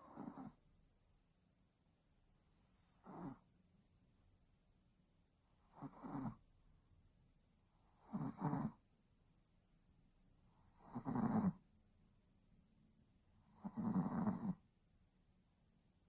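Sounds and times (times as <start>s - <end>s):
dog snoring: 0.0s - 0.6s, 2.5s - 3.5s, 5.5s - 6.4s, 7.7s - 8.8s, 10.5s - 11.6s, 13.4s - 14.6s.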